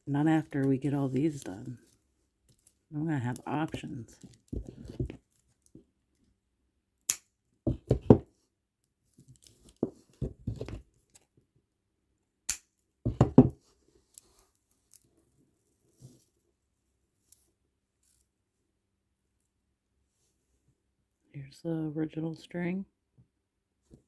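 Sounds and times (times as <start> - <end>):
bracelet rustling: 0.4 - 2.9.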